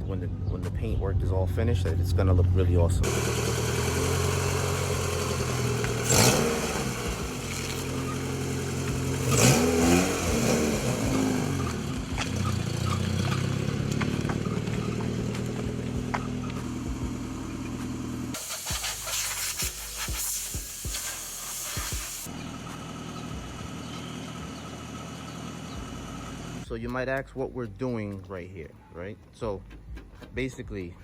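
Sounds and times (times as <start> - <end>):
car engine idling: 1.6 - 26.8
car engine revving: 2.0 - 26.6.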